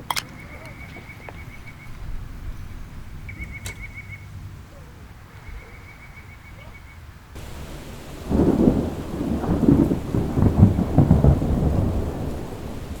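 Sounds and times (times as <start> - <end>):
steady hiss: 7.4 - 13.0
thunder rumbling: 7.4 - 13.0.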